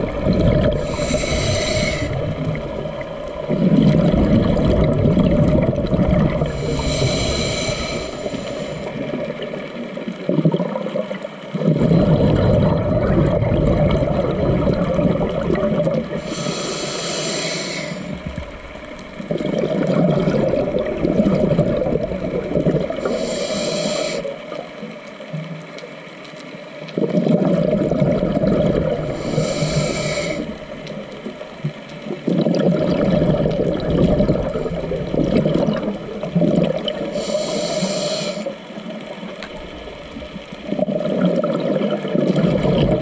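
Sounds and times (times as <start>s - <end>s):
exhaled air bubbling underwater: 0.0s - 43.0s
regulator hissing breaths: 0.7s - 2.7s, 6.4s - 9.2s, 16.2s - 18.5s, 23.0s - 24.5s, 29.0s - 30.8s, 37.0s - 38.7s.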